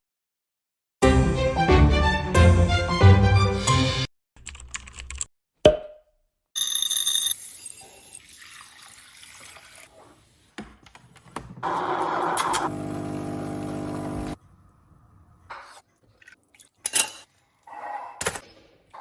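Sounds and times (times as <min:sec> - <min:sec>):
music: 0:01.0 - 0:04.1.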